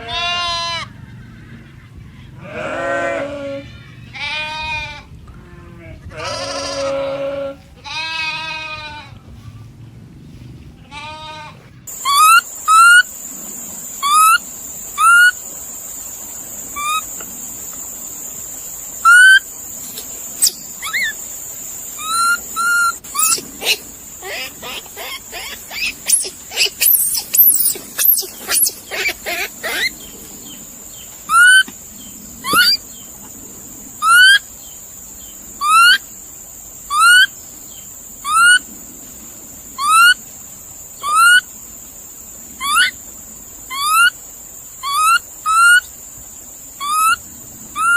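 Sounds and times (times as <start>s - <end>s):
goats bleating: 6.1s - 9.0s, 10.8s - 11.6s
steady high hiss: 11.3s - 47.9s
short rising animal calls: 11.9s - 13.0s, 15.0s - 15.4s.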